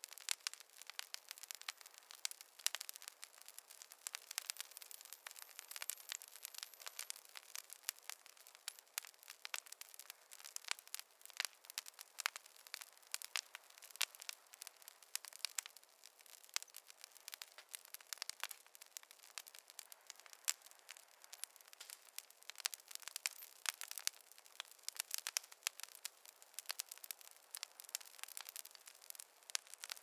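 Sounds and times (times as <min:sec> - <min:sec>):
wood fire crackling: 0:00.0 - 0:30.0.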